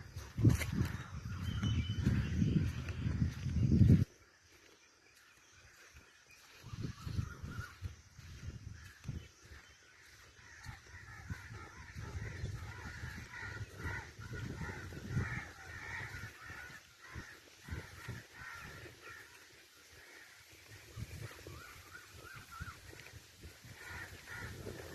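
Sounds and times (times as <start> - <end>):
birds calling harshly: 0.0 - 24.9.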